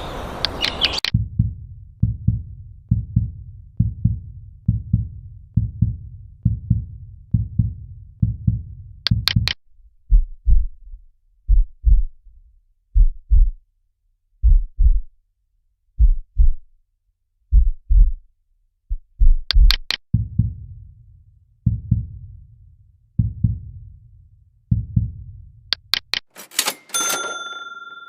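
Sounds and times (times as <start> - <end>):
quick clicks: 0.4 - 1.2, 9.1 - 9.6, 19.5 - 20.1, 25.7 - 26.9
heartbeat thumps: 1.1 - 12.3, 12.9 - 13.6, 14.4 - 15.2, 16.0 - 16.7, 17.5 - 18.3, 18.9 - 20.9, 21.6 - 22.4, 23.2 - 24.0, 24.7 - 26.1.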